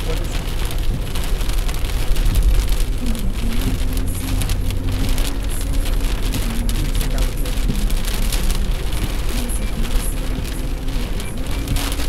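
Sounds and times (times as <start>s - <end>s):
heavy rain pattering: 0.0s - 12.0s
steady low rumble: 0.0s - 12.0s.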